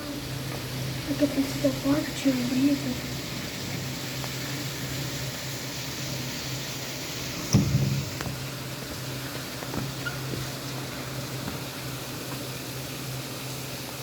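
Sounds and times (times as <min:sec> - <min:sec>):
heavy rain hissing: 0:00.0 - 0:14.0
sudden thump: 0:07.5 - 0:08.4.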